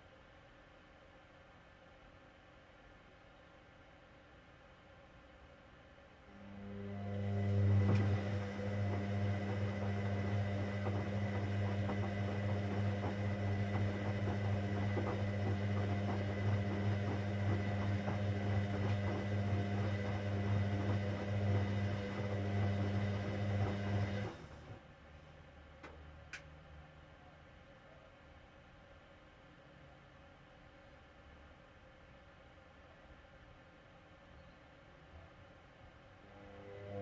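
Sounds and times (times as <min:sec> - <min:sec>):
washing machine humming: 0:06.3 - 0:25.0, 0:36.2 - 0:37.0.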